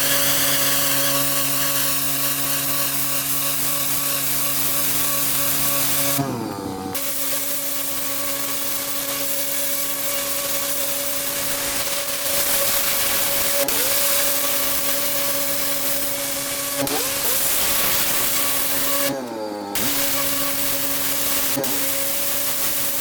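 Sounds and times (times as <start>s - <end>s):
pressure washer motor hum: 0.0s - 23.0s
water jet hissing on slabs: 19.8s - 23.0s.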